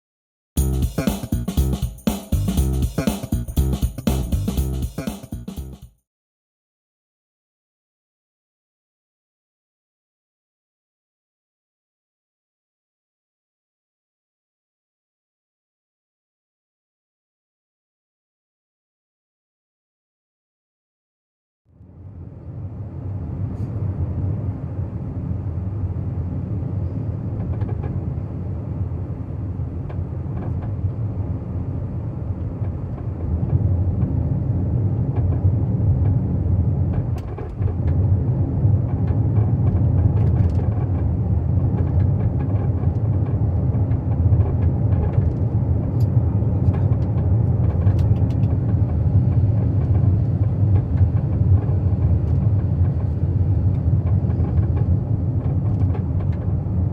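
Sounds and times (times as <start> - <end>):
road and engine rumble: 22.0 - 56.9.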